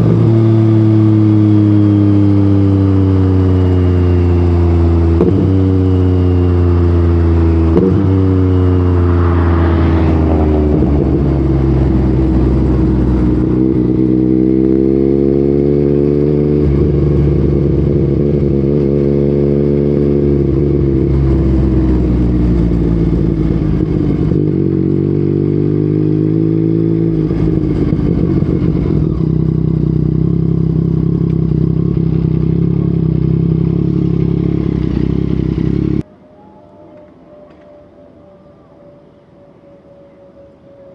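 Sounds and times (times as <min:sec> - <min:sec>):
motorcycle engine revving: 0:00.0 - 0:36.1.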